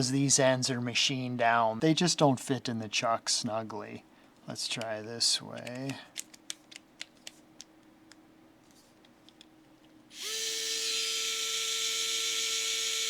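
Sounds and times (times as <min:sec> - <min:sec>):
bit clicking into chuck: 0:04.8 - 0:07.7
electric screwdriver whining: 0:10.1 - 0:13.0.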